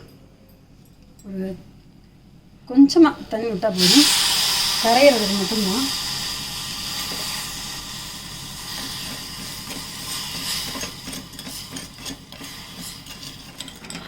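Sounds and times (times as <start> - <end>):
syrup hissing in hot pan: 3.2 - 13.6
spoon scraping against pan: 8.7 - 14.0.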